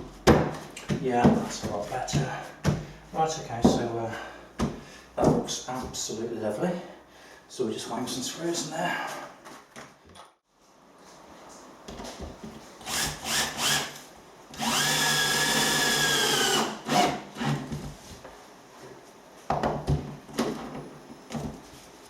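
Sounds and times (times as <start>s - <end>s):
drill driving a screw into wood: 12.8s - 14.0s, 14.6s - 17.7s.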